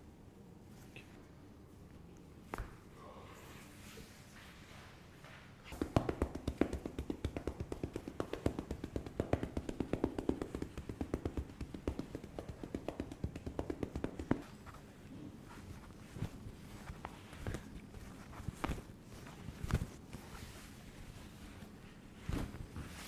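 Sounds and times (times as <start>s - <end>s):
rapid rhythmic tapping: 5.7s - 14.5s.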